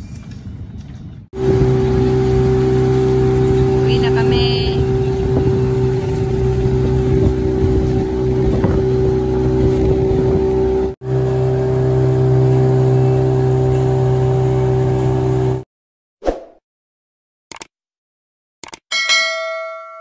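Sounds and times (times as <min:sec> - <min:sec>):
boat motor running: 0:01.4 - 0:15.6.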